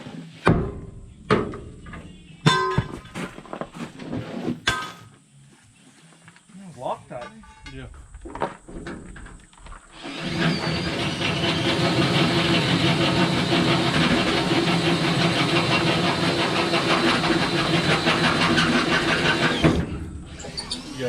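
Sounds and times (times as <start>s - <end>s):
motor-driven machine pulsing: 10.0s - 21.0s.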